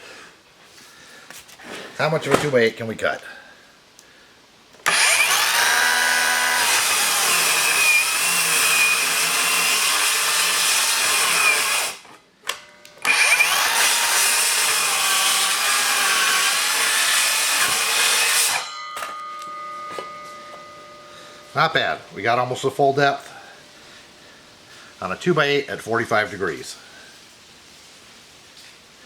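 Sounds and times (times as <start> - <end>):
miter saw cutting wood: 4.8 - 12.0, 13.0 - 18.7.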